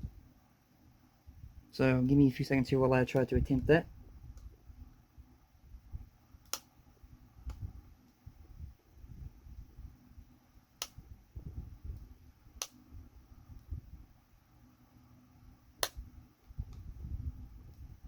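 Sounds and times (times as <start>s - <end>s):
sharp small clicks: 6.4s - 6.7s, 10.8s - 11.0s, 15.8s - 16.0s.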